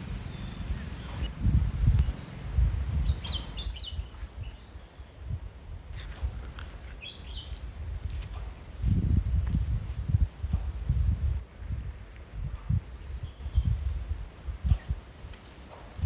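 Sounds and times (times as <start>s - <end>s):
low rumble: 0.0s - 3.8s
bird chirping: 0.0s - 5.3s, 6.0s - 7.7s, 9.7s - 10.6s.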